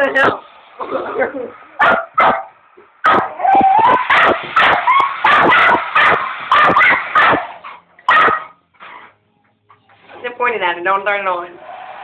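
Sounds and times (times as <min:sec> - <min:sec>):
dog barking and yipping: 0:01.8 - 0:08.6.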